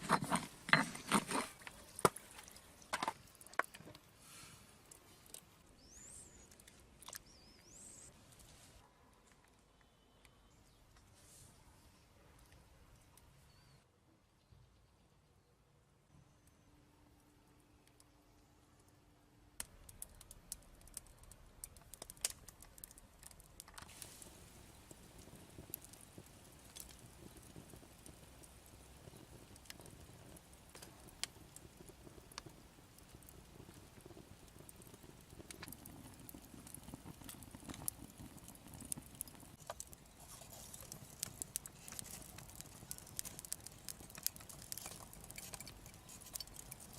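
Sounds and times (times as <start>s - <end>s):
small bird chirping: 5.8s - 8.2s
sharp knocks and snaps: 19.6s - 23.9s.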